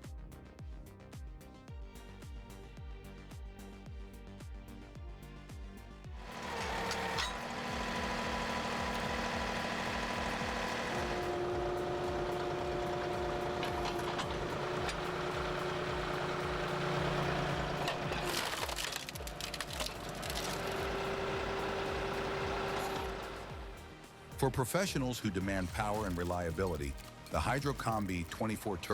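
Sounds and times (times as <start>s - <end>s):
firewood machinery droning: 6.2s - 24.3s, 25.4s - 28.9s.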